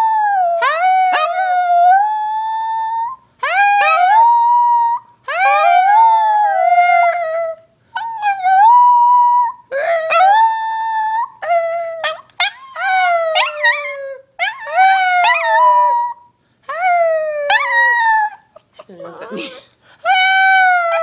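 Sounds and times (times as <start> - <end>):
puppy howling: 0.0 - 21.0
woman howling: 8.2 - 21.0.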